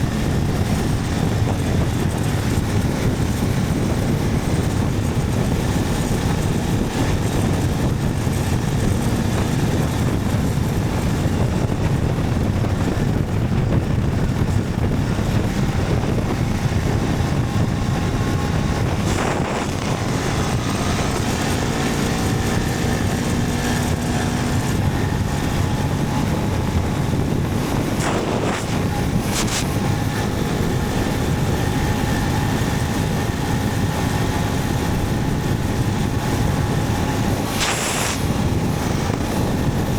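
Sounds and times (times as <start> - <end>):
motorcycle engine running: 0.0 - 39.9
wind and road noise: 0.0 - 39.9
brief swishes: 28.0 - 29.8, 37.4 - 38.4.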